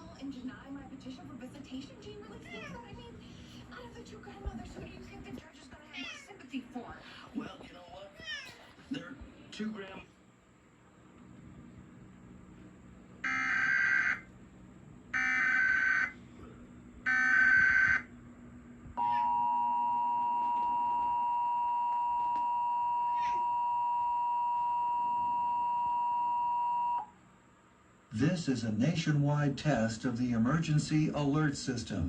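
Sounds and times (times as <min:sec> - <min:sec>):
two-tone attention signal: 0:19.0 - 0:27.1.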